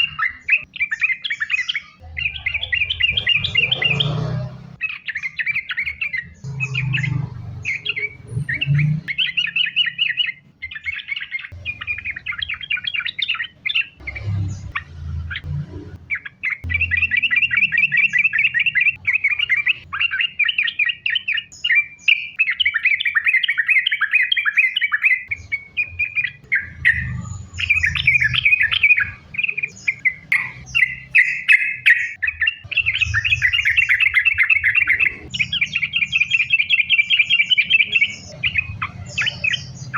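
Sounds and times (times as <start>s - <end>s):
bird singing chattering song: 0.0s - 39.9s.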